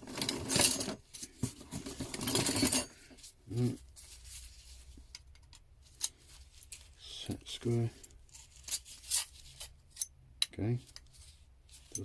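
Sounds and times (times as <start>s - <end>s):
metal hand tools clinking: 0.1s - 3.0s, 11.8s - 12.0s.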